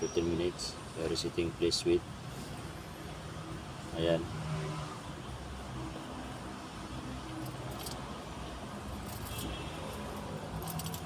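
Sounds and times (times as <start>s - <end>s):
light metallic jingles: 7.3s - 8.0s, 8.9s - 11.0s.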